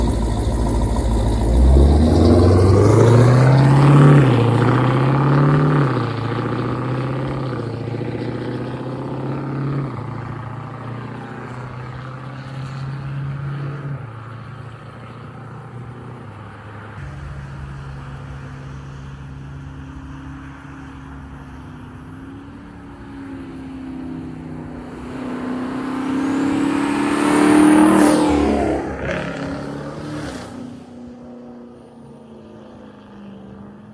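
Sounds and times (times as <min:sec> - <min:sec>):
car engine revving: 0:00.0 - 0:14.8, 0:23.4 - 0:31.3.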